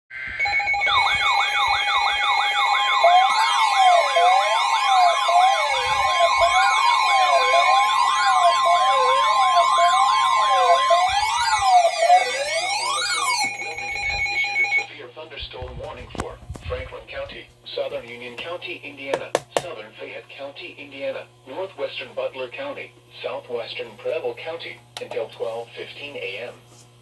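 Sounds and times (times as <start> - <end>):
sirens wailing and yelping: 0.1 - 14.9
steady alert tones: 0.4 - 14.9.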